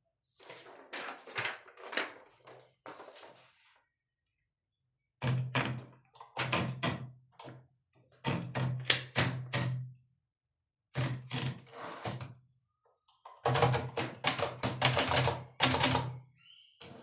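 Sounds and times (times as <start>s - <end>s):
typewriter clicks and knocks: 13.5s - 16.1s.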